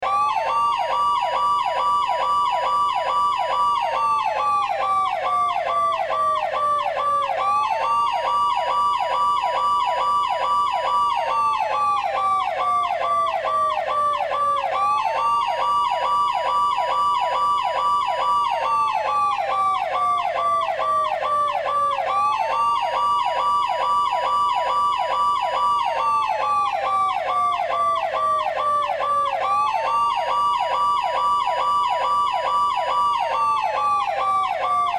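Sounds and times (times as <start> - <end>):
police siren wailing: 0.0 - 34.9.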